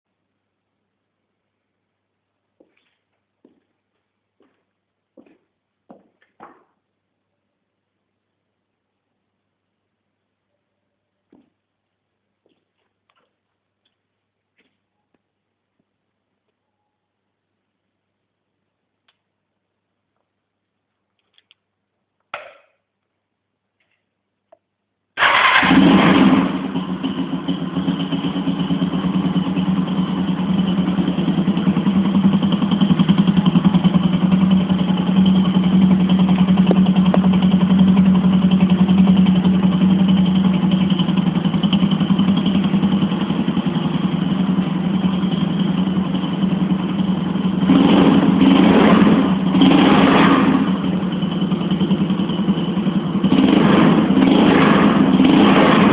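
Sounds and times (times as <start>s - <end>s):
motorcycle engine starting and idling: 25.2s - 55.9s.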